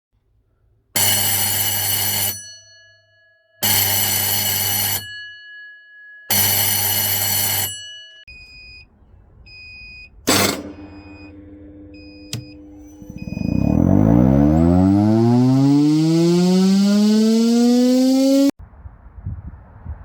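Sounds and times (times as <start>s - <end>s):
electric alarm bell ringing: 1.0s - 8.6s, 10.3s - 18.6s
low steady hum: 9.1s - 17.2s
sharp clatter: 10.3s - 14.3s
high electronic beeping: 10.3s - 18.5s.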